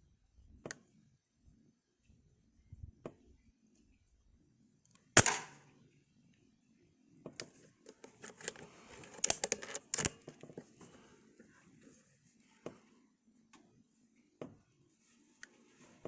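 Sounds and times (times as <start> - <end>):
air rifle shot: 5.2 - 5.6
mechanical clicks and rattles: 7.9 - 10.3.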